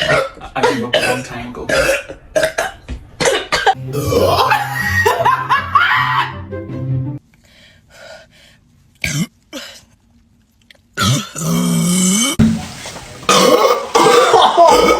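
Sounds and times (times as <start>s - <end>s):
person burping: 0.0s - 4.8s, 11.0s - 12.4s, 13.3s - 14.9s
person coughing: 13.3s - 14.9s.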